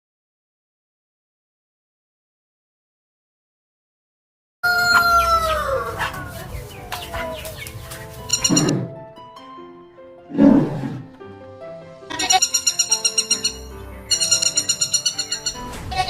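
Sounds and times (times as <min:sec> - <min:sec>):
light background music: 0:04.6 - 0:16.0.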